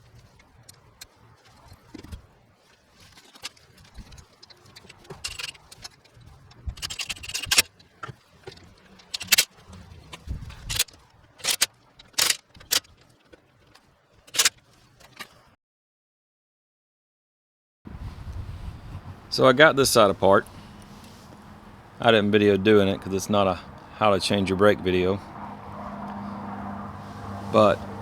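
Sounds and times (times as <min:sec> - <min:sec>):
metal tools and parts clinking: 0:00.0 - 0:15.4.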